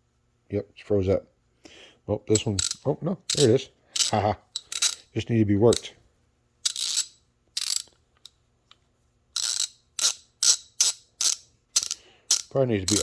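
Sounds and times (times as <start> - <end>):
socket ratchet clicking: 2.4 - 5.1, 6.6 - 8.3, 9.4 - 13.0.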